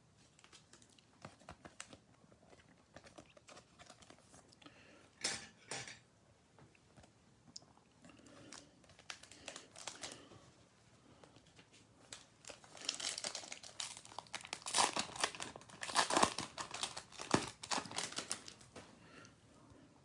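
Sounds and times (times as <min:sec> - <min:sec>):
foil wrapper crinkling: 0:08.4 - 0:10.3, 0:12.0 - 0:18.7.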